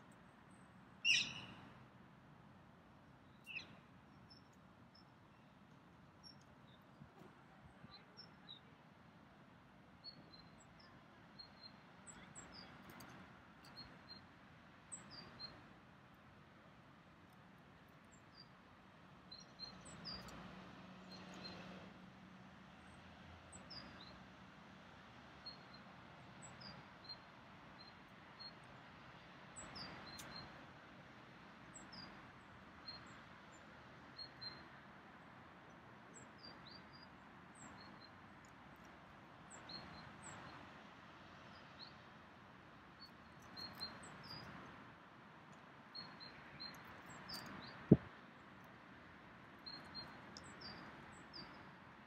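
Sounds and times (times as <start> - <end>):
small birds chirping: 0.5 - 1.6, 3.2 - 3.8, 43.0 - 44.6.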